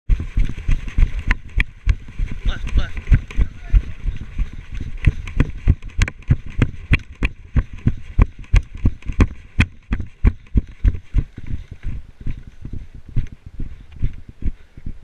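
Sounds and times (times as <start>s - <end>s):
running footsteps: 0.1s - 15.0s.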